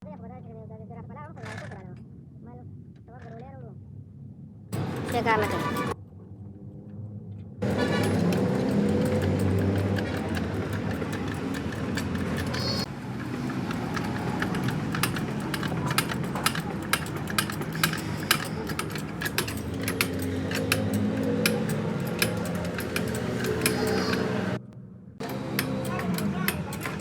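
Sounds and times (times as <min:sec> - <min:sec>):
sharp metallic clicks and clinks: 0:04.8 - 0:06.0, 0:07.6 - 0:24.6, 0:25.2 - 0:27.0.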